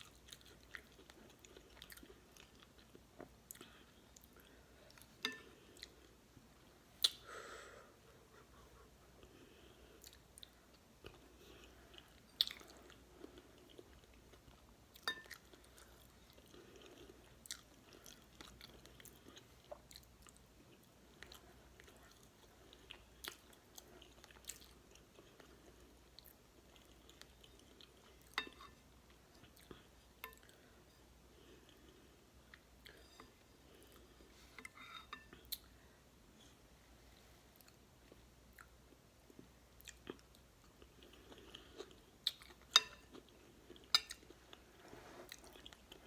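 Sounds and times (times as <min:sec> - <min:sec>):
person chewing food: 0:00.0 - 0:06.2, 0:08.0 - 0:36.6, 0:37.5 - 0:46.0.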